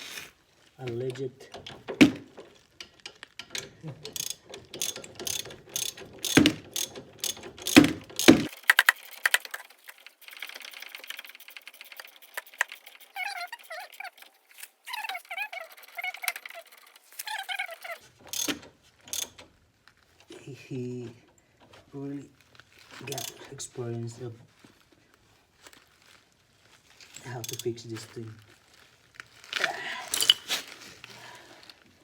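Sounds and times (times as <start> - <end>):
ratchet wrench clicking: 2.8 - 9.6, 10.2 - 14.2, 18.3 - 19.4, 23.1 - 23.4, 27.4 - 27.7.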